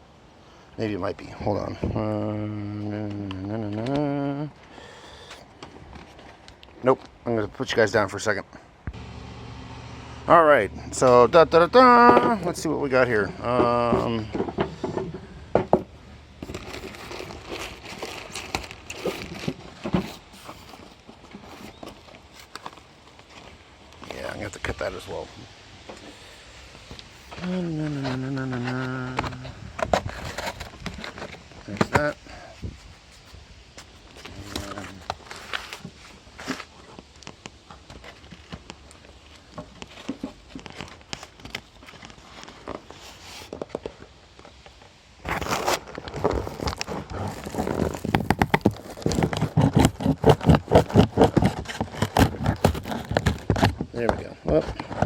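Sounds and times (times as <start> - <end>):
cardboard box rustling and crackling: 11.0 - 25.3, 26.0 - 55.0.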